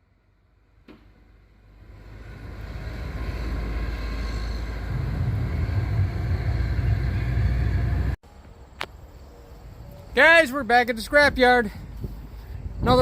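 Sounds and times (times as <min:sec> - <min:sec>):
vehicle running: 0:00.0 - 0:08.2
road and wind noise: 0:00.0 - 0:13.0.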